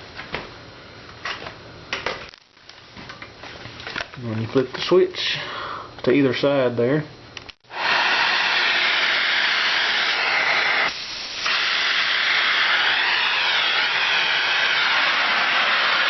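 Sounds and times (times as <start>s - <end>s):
central vacuum running: 7.6s - 16.0s
wavering whistle: 7.8s - 16.0s.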